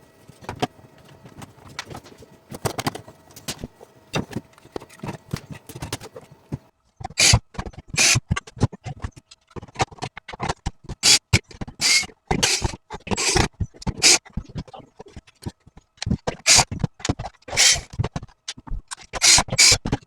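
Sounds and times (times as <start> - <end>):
clicks and knocks of plastic parts: 0.2 - 20.0
short scraping noises: 17.5 - 18.0.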